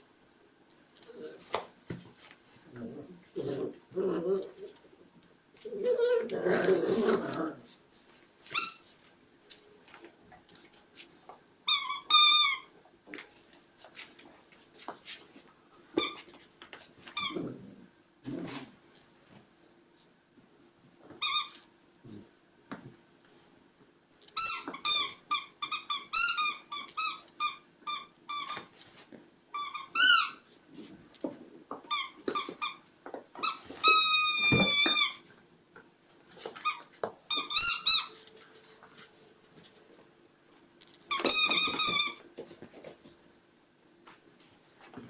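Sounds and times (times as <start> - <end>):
puppy whining: 5.6 - 7.7, 17.1 - 17.9, 33.4 - 35.3.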